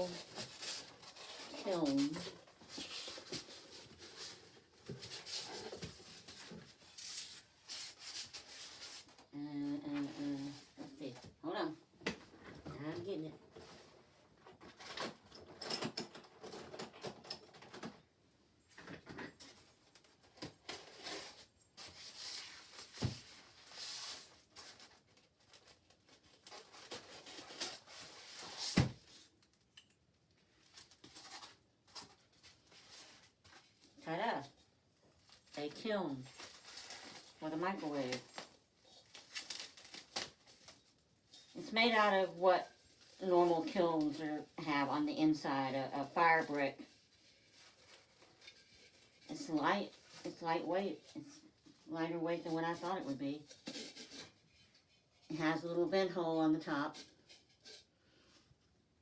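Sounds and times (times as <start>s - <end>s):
packaging rustling and scraping: 0.0s - 9.3s, 19.3s - 29.6s, 30.6s - 34.0s, 35.1s - 44.6s, 45.9s - 50.4s, 53.4s - 55.3s
packaging rustling: 36.2s - 37.4s, 38.1s - 41.0s.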